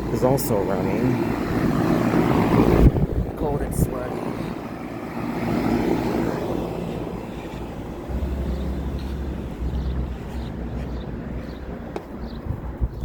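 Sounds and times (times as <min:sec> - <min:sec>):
condenser fan whoosh: 0:00.0 - 0:11.3
compressor hum: 0:00.0 - 0:13.0
low rumble: 0:06.1 - 0:13.0.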